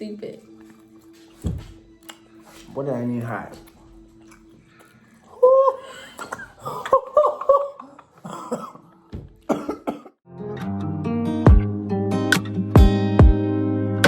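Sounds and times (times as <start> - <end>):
person coughing: 6.0 - 8.9, 9.5 - 10.2
guitar music: 10.3 - 14.0.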